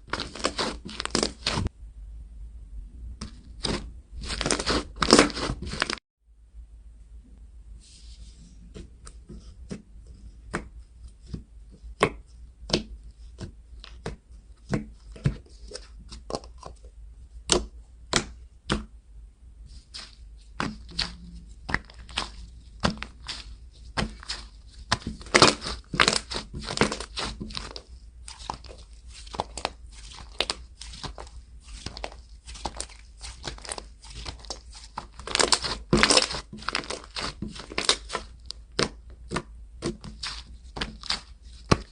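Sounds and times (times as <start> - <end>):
slime dense crackling: 0.0 - 1.7, 3.5 - 6.0, 19.9 - 41.9.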